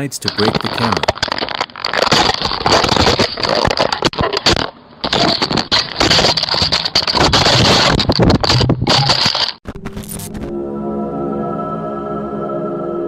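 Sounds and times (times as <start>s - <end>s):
scraping and crackling on microphone: 0.2s - 10.6s.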